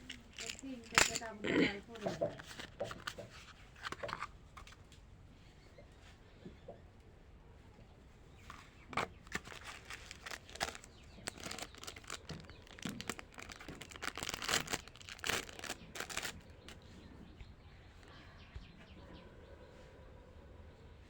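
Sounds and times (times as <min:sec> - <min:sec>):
plastic wrappers crinkling: 0:00.0 - 0:04.8, 0:08.5 - 0:16.8.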